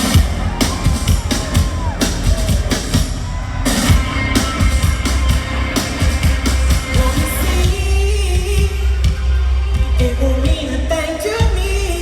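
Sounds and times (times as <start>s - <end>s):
live rock band playing: 0.0s - 7.6s
heavy bass drum: 0.0s - 12.0s.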